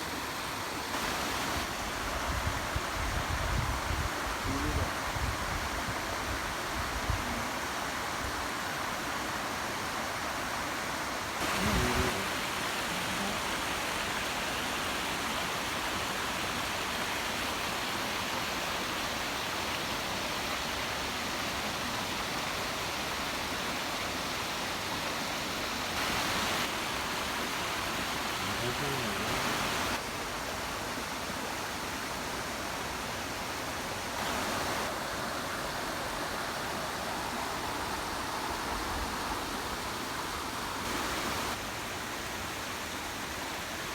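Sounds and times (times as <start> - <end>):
waterfall rushing: 0.0 - 2.2, 6.4 - 43.9.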